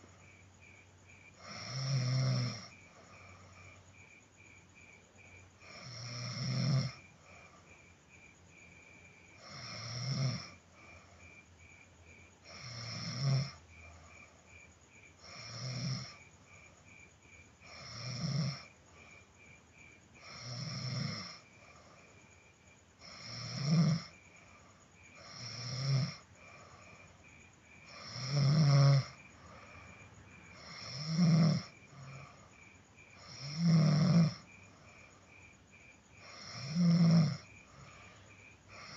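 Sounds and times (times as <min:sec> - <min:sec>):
person snoring: 0:01.4 - 0:03.8, 0:05.6 - 0:07.0, 0:09.4 - 0:10.6, 0:12.4 - 0:13.6, 0:17.6 - 0:18.7, 0:20.2 - 0:21.4, 0:23.0 - 0:24.1, 0:25.1 - 0:27.0, 0:27.8 - 0:32.5, 0:33.2 - 0:35.3, 0:36.2 - 0:38.9.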